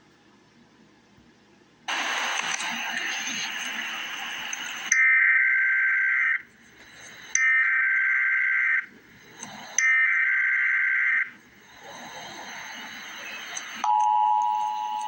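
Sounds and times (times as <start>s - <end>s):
buzzy digital data tones: 9.6s - 13.9s.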